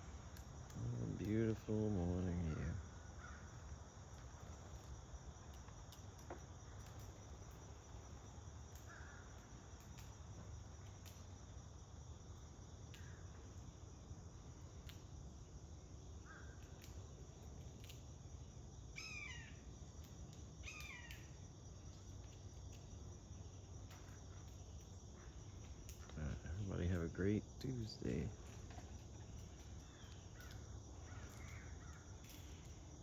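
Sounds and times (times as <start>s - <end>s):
high insect drone: 0.0s - 33.0s
birds calling: 19.0s - 19.6s, 20.6s - 21.3s
chirps falling in pitch: 20.7s - 21.3s.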